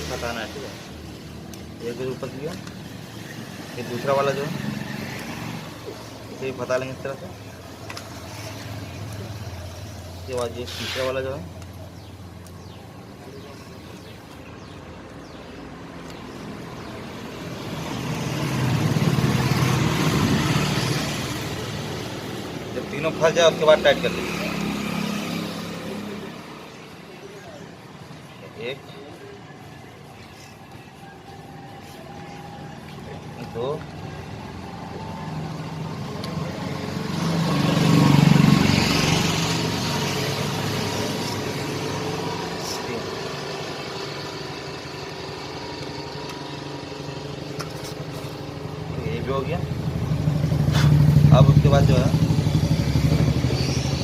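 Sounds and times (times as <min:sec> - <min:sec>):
road vehicle passing: 0:00.0 - 0:54.0.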